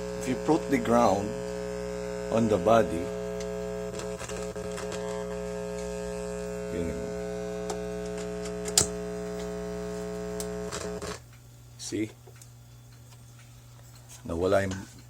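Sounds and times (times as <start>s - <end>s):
steady mains hum: 0.0s - 15.0s
sharp click: 8.6s - 9.0s.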